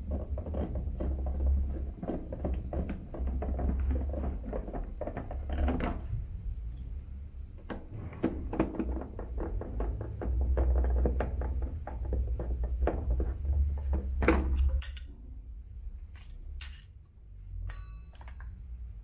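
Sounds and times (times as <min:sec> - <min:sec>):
plastic covers clicking and knocking: 0:00.0 - 0:06.1, 0:07.6 - 0:15.0
low rumble: 0:07.9 - 0:09.4.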